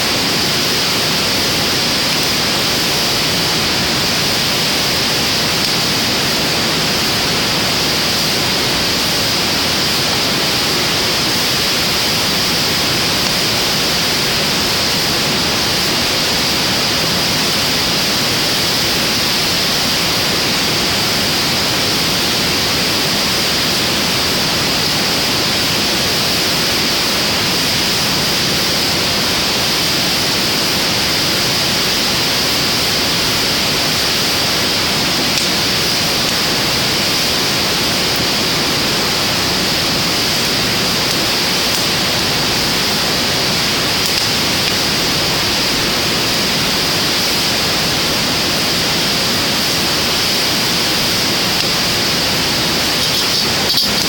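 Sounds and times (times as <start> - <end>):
fire rushing hiss: 0.0 - 54.0
fire crackles: 0.1 - 17.2, 30.8 - 54.0.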